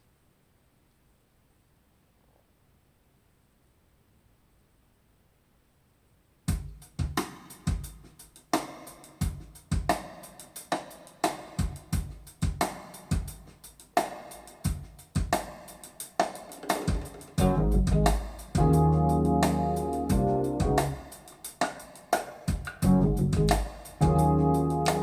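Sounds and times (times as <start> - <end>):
drum kit playing a groove: 6.5 - 25.0.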